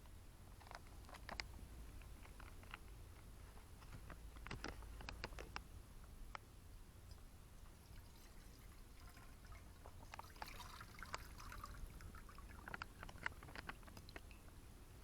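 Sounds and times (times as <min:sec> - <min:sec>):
light clicks and knocks: 0:00.0 - 0:06.5, 0:09.8 - 0:14.6
liquid pouring: 0:07.6 - 0:14.5.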